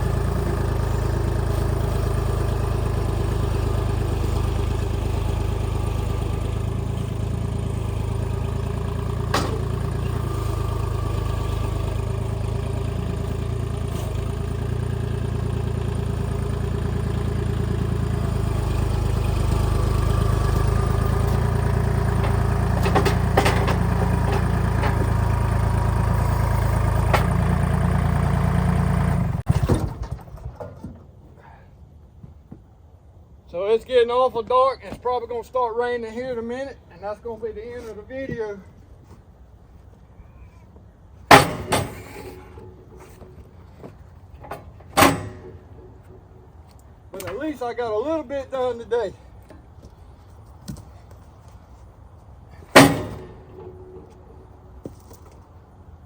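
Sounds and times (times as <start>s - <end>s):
tractor diesel engine running: 0.0s - 56.0s
sharp knocks and clatter: 9.0s - 10.3s, 20.3s - 28.0s, 41.3s - 47.3s, 52.6s - 55.6s.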